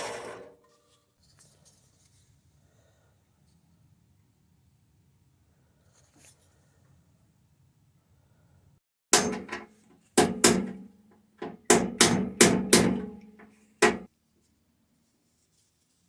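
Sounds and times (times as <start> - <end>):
hammer striking steel: 9.2 - 14.1.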